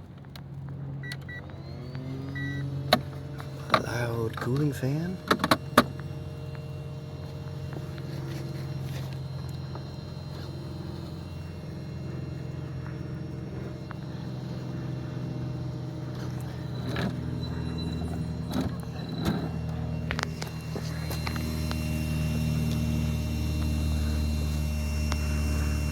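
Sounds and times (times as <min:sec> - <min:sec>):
loud cooling fan: 0:00.0 - 0:25.9
simulated engine idle from speaker: 0:00.7 - 0:25.9
sharp clicks and knocks: 0:05.2 - 0:06.6.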